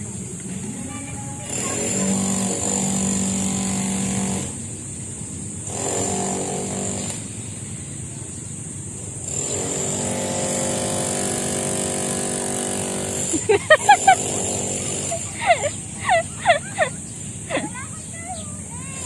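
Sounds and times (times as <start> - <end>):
vehicle engine humming: 10.2 - 19.0.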